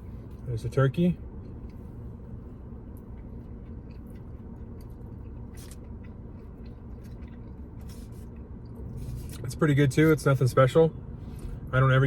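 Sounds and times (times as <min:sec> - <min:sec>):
chewing with wet mouth clicks: 0:02.9 - 0:09.4.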